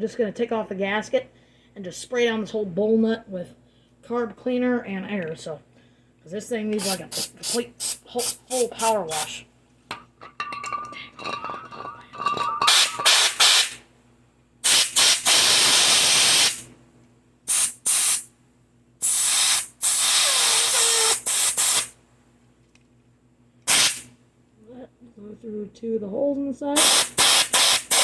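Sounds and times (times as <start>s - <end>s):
spray hissing blasts: 6.8s - 9.4s, 12.7s - 13.8s, 14.6s - 16.6s, 23.7s - 24.1s, 26.8s - 28.0s.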